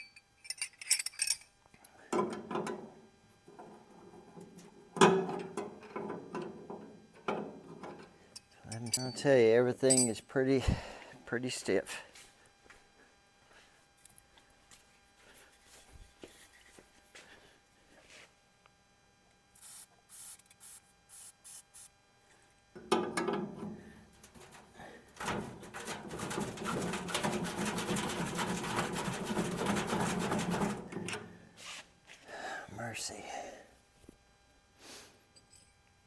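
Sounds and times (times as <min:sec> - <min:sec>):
tools scraping and rubbing: 0:24.2 - 0:31.9.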